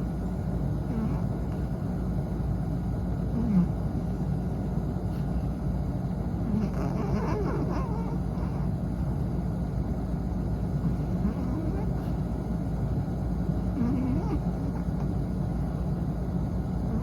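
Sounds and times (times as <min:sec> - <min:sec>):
dog snoring: 0:00.8 - 0:01.7, 0:03.3 - 0:03.8, 0:06.4 - 0:09.0, 0:10.8 - 0:12.2, 0:13.6 - 0:15.8, 0:16.8 - 0:17.0.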